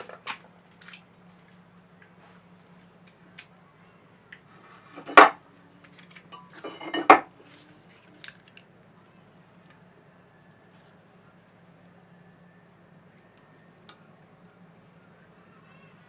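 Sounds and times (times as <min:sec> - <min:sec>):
metal objects clanking: 0:04.8 - 0:05.4, 0:06.3 - 0:07.3.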